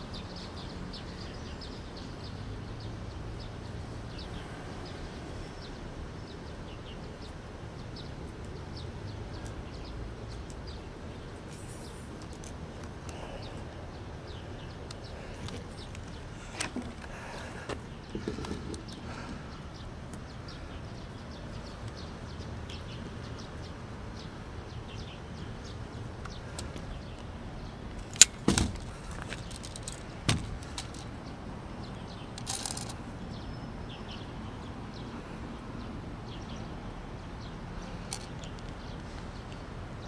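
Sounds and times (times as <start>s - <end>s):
outdoor background noise: 0.0s - 40.0s
short rattle: 28.0s - 31.2s, 32.4s - 33.0s
dull thud: 28.2s - 31.0s.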